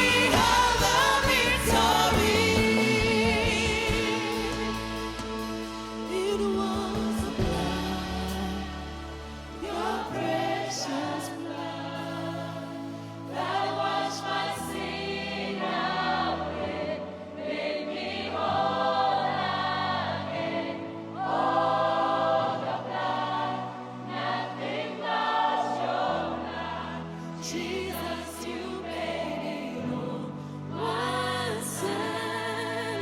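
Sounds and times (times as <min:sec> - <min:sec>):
bass guitar: 0:00.0 - 0:09.7
choir singing in harmony: 0:00.0 - 0:33.0
keyboard: 0:00.0 - 0:33.0.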